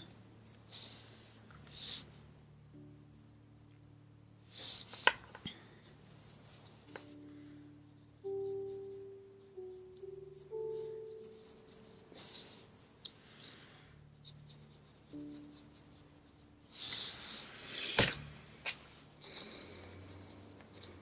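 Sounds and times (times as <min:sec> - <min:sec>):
drawing tool scratching on paper: 0:14.2 - 0:21.0.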